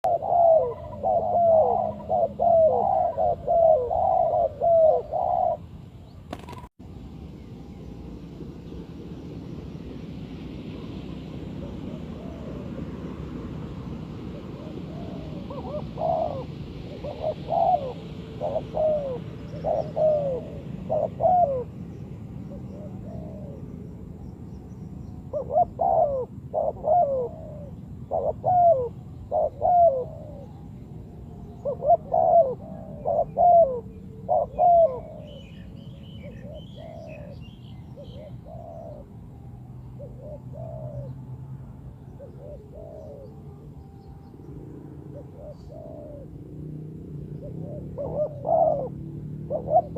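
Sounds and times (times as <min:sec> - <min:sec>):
doves cooing: 0:00.0 - 0:06.7, 0:10.7 - 0:24.0, 0:25.2 - 0:49.9.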